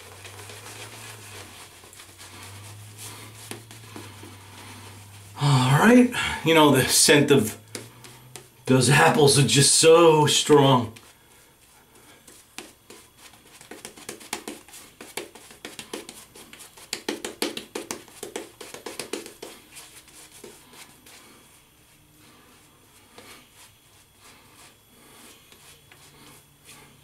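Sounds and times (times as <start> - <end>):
shaving brush strokes on stubble: 0.0 - 5.4, 12.2 - 27.0.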